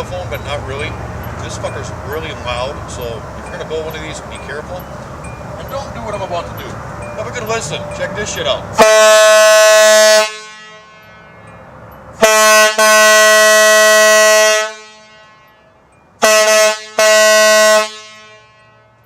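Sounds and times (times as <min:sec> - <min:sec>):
loud air horn blasts: 0:08.7 - 0:11.6, 0:12.2 - 0:19.0.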